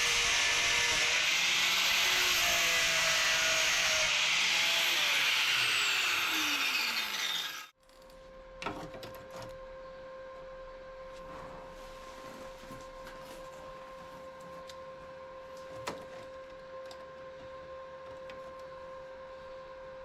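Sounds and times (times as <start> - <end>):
angle grinder on metal: 0.0 - 7.8.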